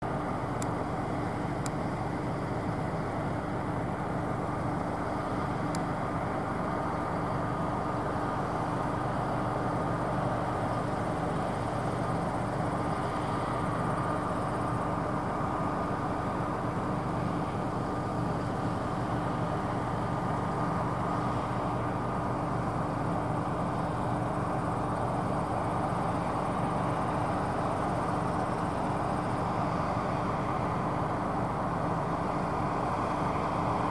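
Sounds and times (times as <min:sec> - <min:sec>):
combine harvester drone: 0:00.0 - 0:33.9.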